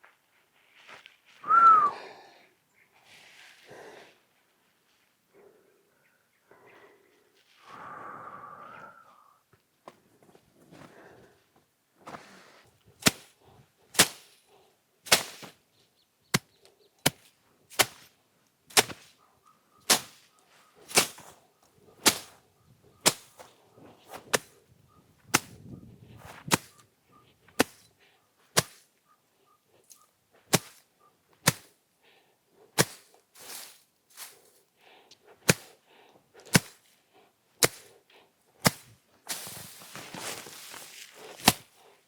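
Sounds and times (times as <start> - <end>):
hand tool chopping wood: 13.0 - 13.3, 14.0 - 14.3, 15.1 - 15.6, 16.3 - 18.1, 18.7 - 19.1, 19.9 - 20.3, 20.9 - 21.4, 22.0 - 22.4, 23.0 - 23.5, 24.2 - 24.6, 25.3 - 25.6, 26.4 - 26.8, 27.6 - 27.9, 28.5 - 28.9, 30.5 - 31.8, 32.8 - 33.1, 35.4 - 35.8, 36.5 - 36.9, 37.6 - 37.9, 38.6 - 39.6, 41.3 - 41.8.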